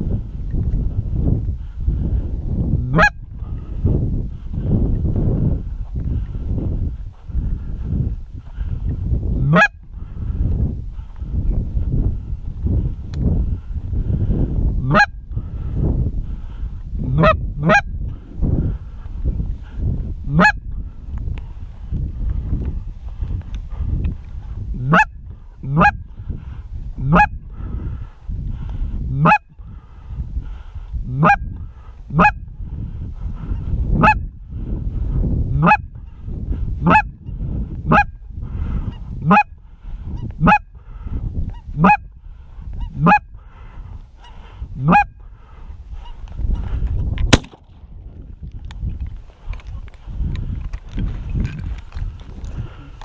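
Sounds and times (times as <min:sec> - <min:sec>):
low rumble: 0:00.0 - 0:53.0
goose honking: 0:09.5 - 0:09.7.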